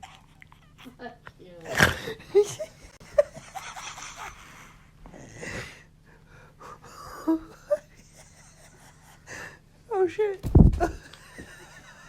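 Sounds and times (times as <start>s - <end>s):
heavy wheezy breathing: 3.5s - 9.7s.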